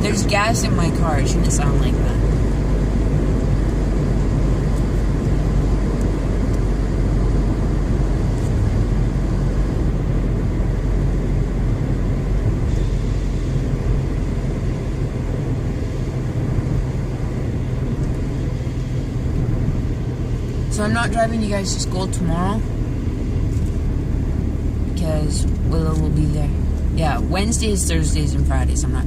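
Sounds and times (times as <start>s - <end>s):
driver talking: 0.0s - 2.4s, 20.7s - 22.8s, 24.9s - 29.0s
car engine and road noise: 0.0s - 29.0s.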